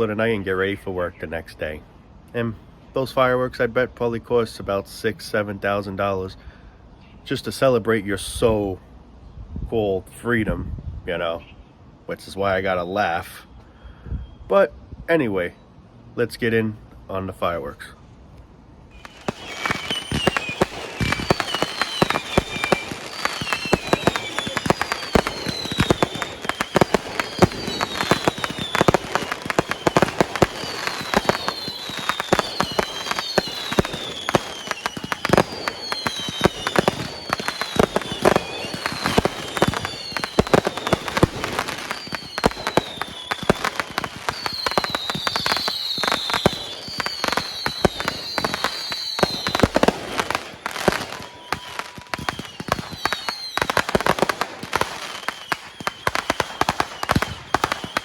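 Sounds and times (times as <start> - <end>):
falling firework whistles: 18.9 - 58.0
fireworks bangs and crackling: 18.9 - 58.0.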